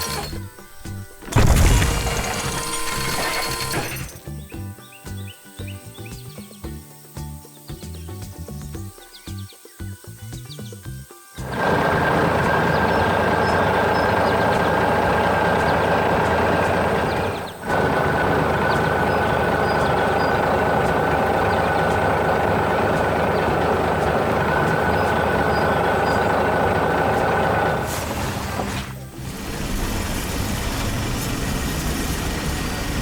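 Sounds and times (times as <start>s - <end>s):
construction vehicle engine running: 0.0s - 4.2s, 11.4s - 33.0s.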